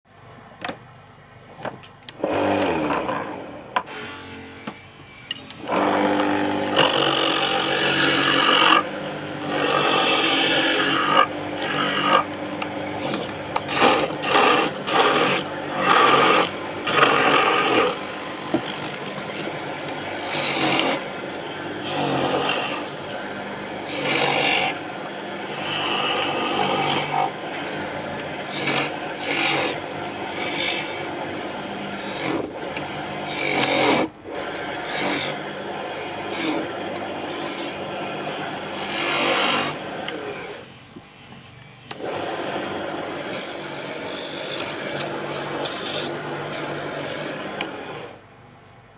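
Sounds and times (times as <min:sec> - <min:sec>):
sanding strokes on wood: 0:43.3 - 0:47.4.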